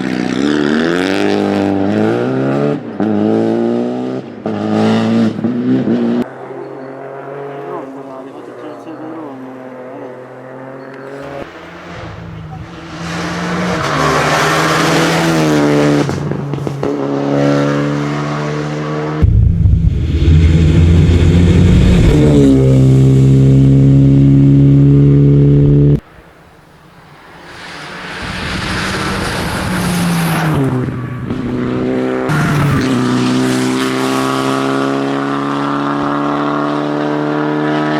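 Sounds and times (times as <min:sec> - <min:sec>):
rally car engines revving: 0:00.0 - 0:19.3, 0:19.9 - 0:37.9.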